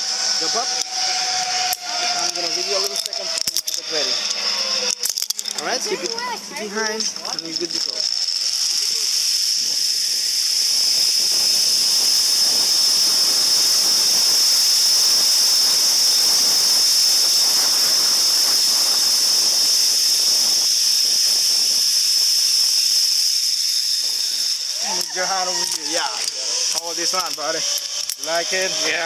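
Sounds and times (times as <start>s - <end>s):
zipline trolley on steel cable: 0.0s - 29.0s.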